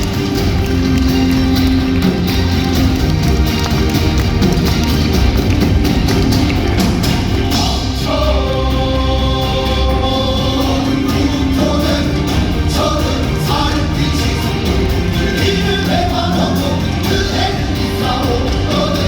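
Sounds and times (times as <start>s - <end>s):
ensemble singing over a beat: 6.2s - 19.0s.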